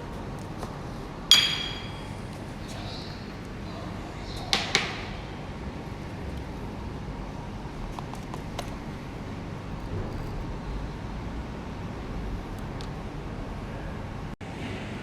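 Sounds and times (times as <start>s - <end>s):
steady low rumble: 0.0s - 14.4s
metal portafilter clinks: 1.3s - 2.2s.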